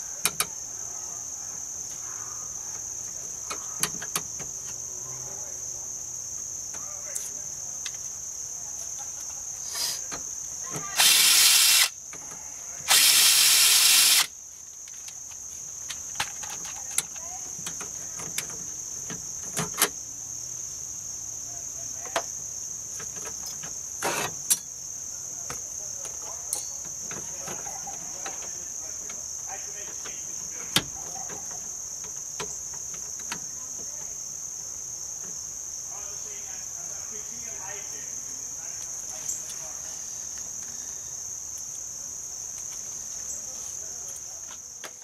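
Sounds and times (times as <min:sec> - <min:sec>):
high-pitched insect chirring: 0:02.3 - 0:12.2, 0:12.9 - 0:19.4
loud hissing rush: 0:09.6 - 0:12.0.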